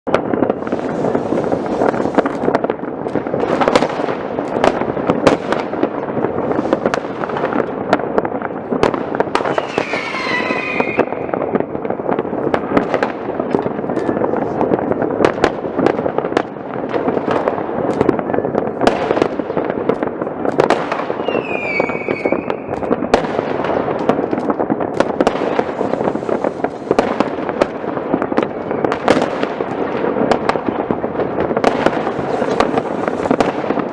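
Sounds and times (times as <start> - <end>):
fireworks bangs and crackling: 0.0 - 33.9
whistling rocket: 9.3 - 11.4, 21.0 - 22.9.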